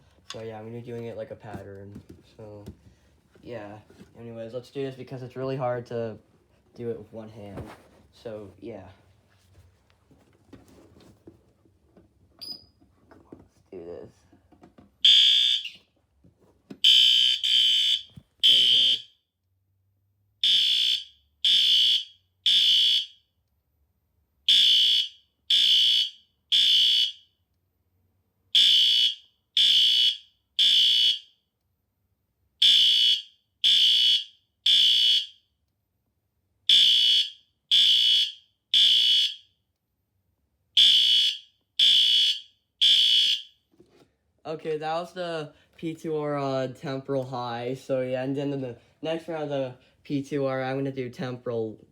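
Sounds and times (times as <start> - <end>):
shrill fire alarm horn blasts: 15.0 - 15.8, 16.8 - 19.2, 20.4 - 23.2, 24.5 - 27.3, 28.5 - 31.3, 32.6 - 35.4, 36.7 - 39.5, 40.8 - 43.6.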